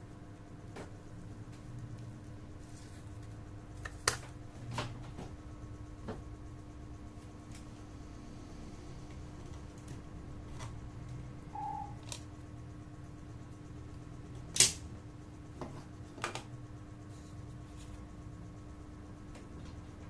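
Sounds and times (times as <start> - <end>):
short electronic beep: 11.5 - 12.0.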